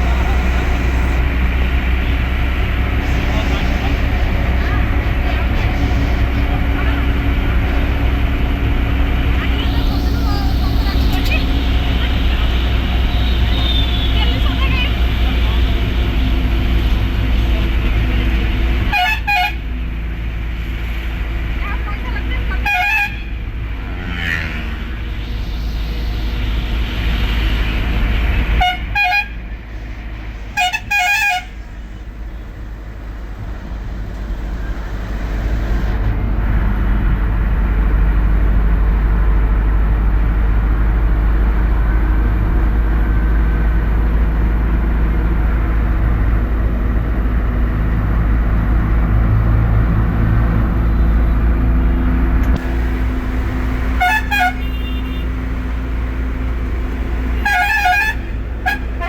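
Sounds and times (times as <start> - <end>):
bus horn toots: 0.0 - 19.8, 22.0 - 23.5, 28.5 - 36.1, 52.5 - 59.0
bus engine drone: 0.0 - 59.0
road noise: 0.0 - 59.0.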